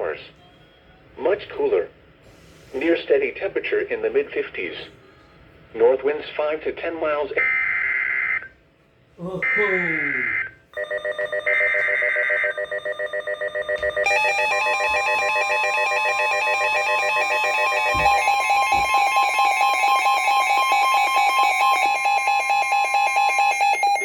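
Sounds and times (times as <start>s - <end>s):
steady warning alarm tone: 7.3s - 8.6s, 9.4s - 24.0s
rapid pulsing alarm beeps: 7.4s - 8.5s, 9.4s - 24.0s
digital header tones: 9.4s - 24.0s.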